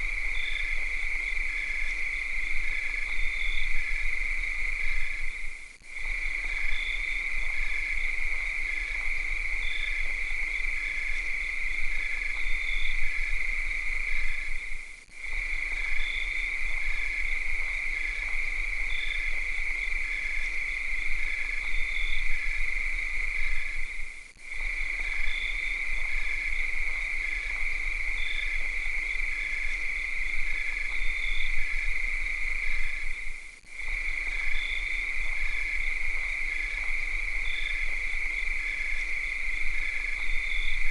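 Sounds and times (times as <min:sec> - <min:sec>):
cicadas buzzing: 0:00.0 - 0:40.9.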